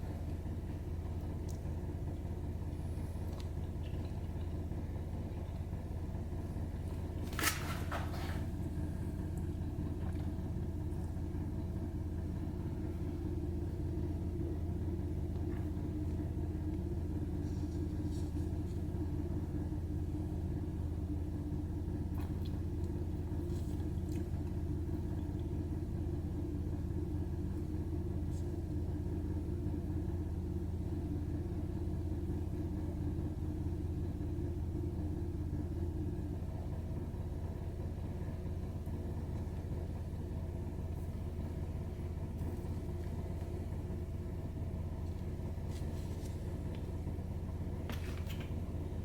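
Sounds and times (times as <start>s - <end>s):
steady low hum: 0.0s - 49.0s.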